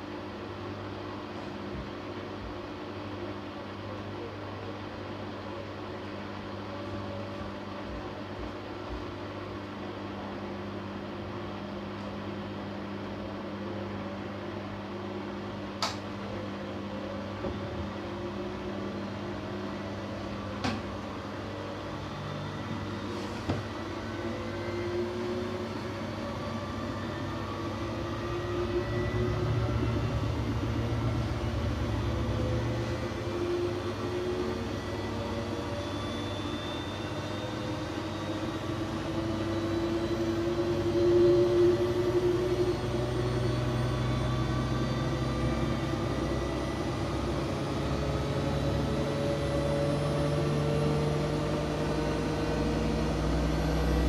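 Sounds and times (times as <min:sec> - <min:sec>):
washing machine motor whine: 0:00.0 - 0:54.0
low hum: 0:17.5 - 0:54.0.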